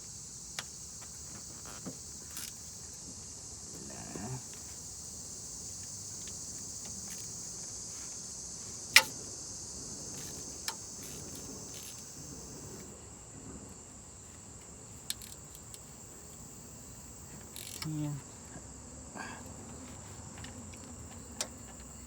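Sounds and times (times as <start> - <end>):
crickets chirping: 0.0 - 22.0
sharp clicks: 8.9 - 9.2.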